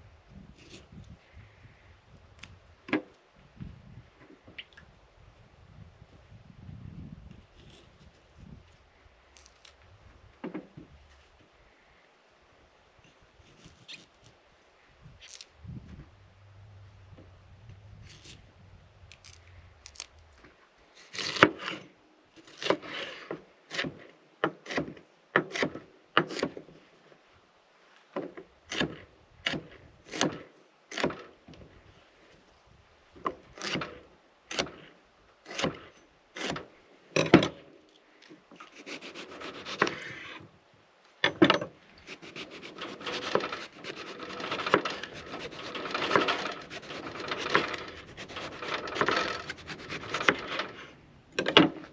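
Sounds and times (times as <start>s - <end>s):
hand saw cutting wood: 21.0s - 26.6s, 28.7s - 31.3s, 33.4s - 36.7s, 38.6s - 40.4s, 42.0s - 51.0s.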